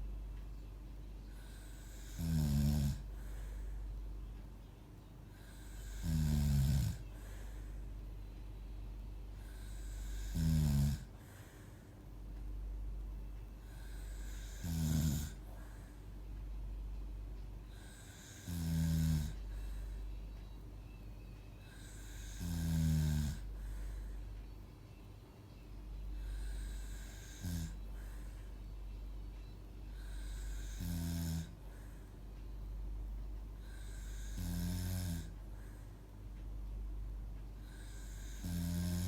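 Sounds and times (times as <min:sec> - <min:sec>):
steady low hum: 0:00.0 - 0:39.0
breathing: 0:01.2 - 0:02.3, 0:03.1 - 0:04.0, 0:05.3 - 0:08.6, 0:09.3 - 0:10.4, 0:11.0 - 0:12.2, 0:13.6 - 0:14.7, 0:15.3 - 0:16.2, 0:17.7 - 0:25.6, 0:26.2 - 0:32.6, 0:33.6 - 0:36.4, 0:37.6 - 0:39.0
droning snores: 0:01.2 - 0:03.8, 0:05.3 - 0:08.0, 0:09.3 - 0:11.9, 0:13.6 - 0:16.2, 0:17.7 - 0:21.0, 0:21.6 - 0:24.3, 0:26.0 - 0:28.6, 0:29.9 - 0:32.2, 0:33.5 - 0:36.0, 0:37.6 - 0:39.0.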